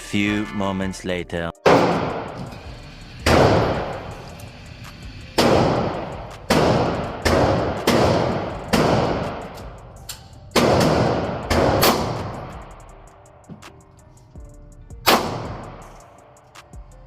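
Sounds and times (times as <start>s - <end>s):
echoing gunshots: 1.7s - 2.4s, 3.2s - 4.2s, 5.4s - 9.6s, 10.5s - 12.6s, 15.1s - 15.8s.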